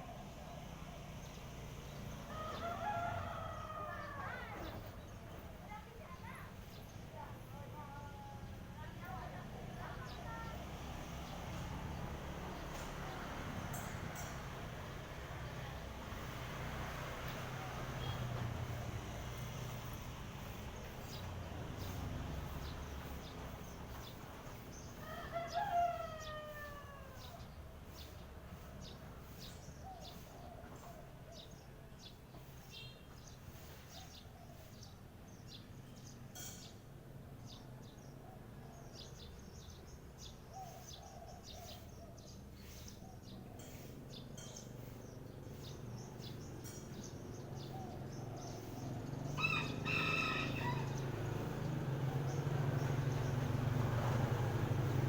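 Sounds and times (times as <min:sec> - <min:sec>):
rooster crowing: 0:02.3 - 0:04.5, 0:25.0 - 0:27.4, 0:49.4 - 0:51.4
small birds chirping: 0:27.1 - 0:55.0.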